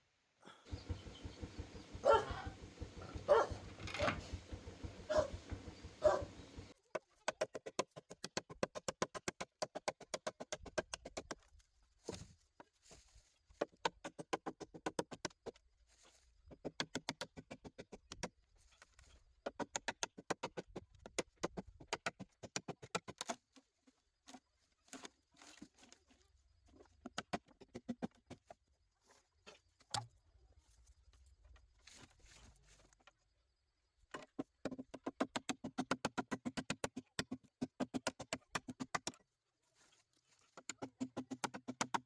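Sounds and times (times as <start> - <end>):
rapid sharp taps: 0.7 - 6.7.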